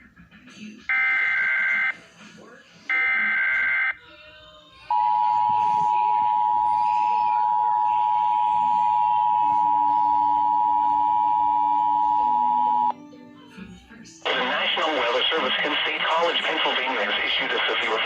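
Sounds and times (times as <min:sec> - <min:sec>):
loud steady dual tone: 0:04.9 - 0:12.9.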